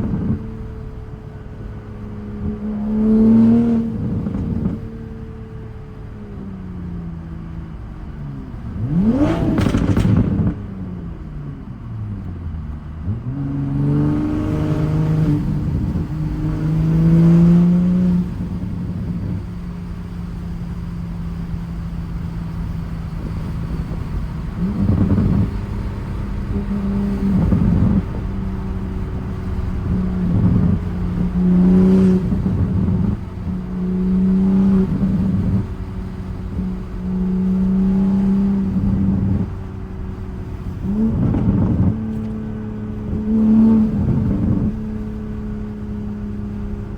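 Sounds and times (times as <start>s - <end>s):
turbocharged car engine revving: 1.7s - 5.2s, 8.4s - 46.9s
exhaust cracks: 8.5s - 13.3s, 22.7s - 45.1s.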